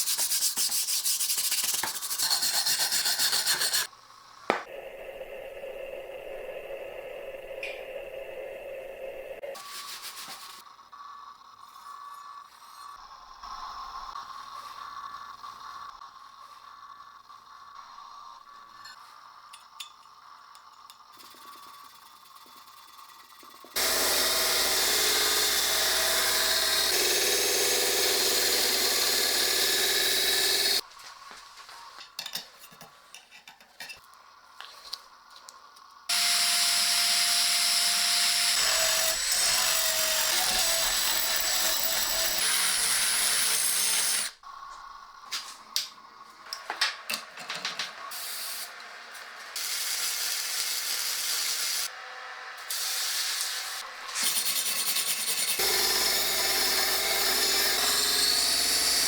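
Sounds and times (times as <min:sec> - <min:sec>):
power grinder on steel: 0:23.6 - 0:30.8, 0:36.1 - 0:44.4, 0:48.1 - 0:59.0.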